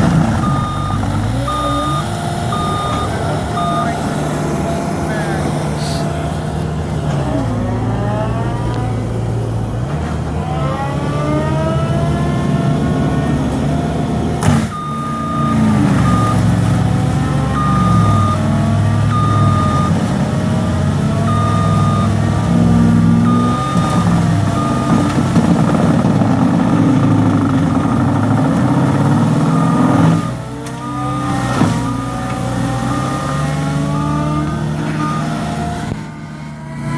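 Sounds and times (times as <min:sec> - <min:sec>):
loader diesel engine working: 0:00.0 - 0:36.9
reversing alarm beeping: 0:00.4 - 0:04.3, 0:14.7 - 0:20.0, 0:21.2 - 0:25.2, 0:29.3 - 0:35.5.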